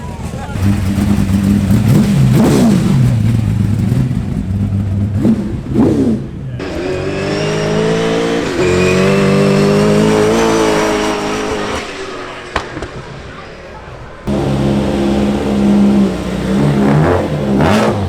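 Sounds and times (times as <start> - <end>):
car engine revving: 0.0 - 18.0
car engine running steadily: 14.3 - 18.0.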